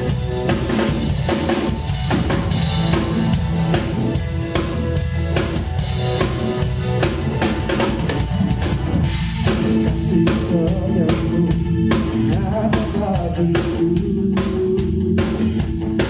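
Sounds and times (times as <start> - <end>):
drum kit beat: 0.0 - 16.0
live band playing: 0.0 - 16.0
person singing: 9.4 - 16.0.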